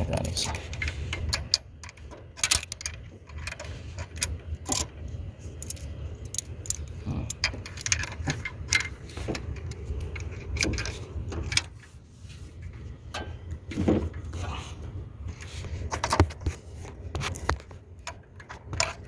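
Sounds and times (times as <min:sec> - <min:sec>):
metal tools clinking on engine parts: 0:00.0 - 0:05.0, 0:05.6 - 0:11.9.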